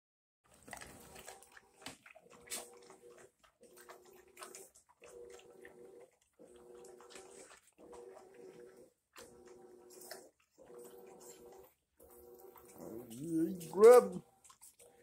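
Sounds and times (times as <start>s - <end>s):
kibble crunching: 0.5s - 5.5s, 12.4s - 15.0s
dog chewing and smacking: 0.5s - 15.0s.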